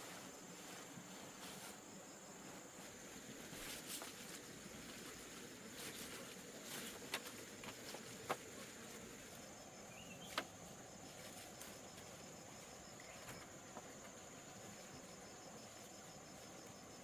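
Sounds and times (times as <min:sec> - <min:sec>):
insects chirring: 0:00.0 - 0:17.0
faint pulsing chirp: 0:09.5 - 0:10.4.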